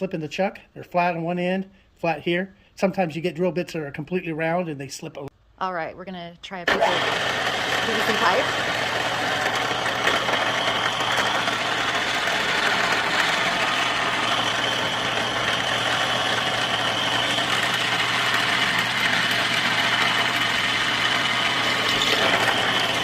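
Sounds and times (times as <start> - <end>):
electric drill whining: 6.7 - 23.0.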